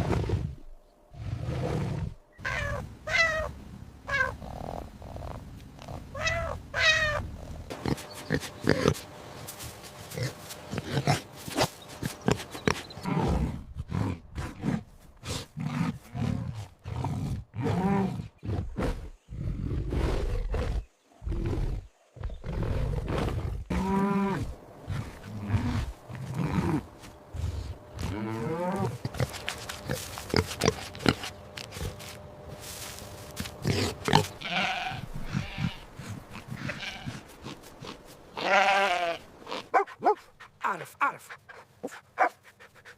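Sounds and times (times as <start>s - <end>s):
animal low grunts: 7.2s - 9.2s, 10.0s - 32.2s, 33.3s - 38.2s.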